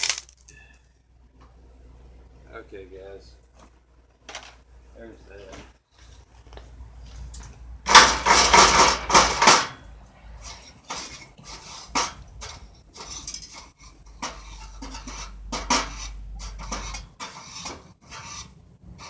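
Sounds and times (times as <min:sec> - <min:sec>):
metal scraping: 0:07.8 - 0:19.0.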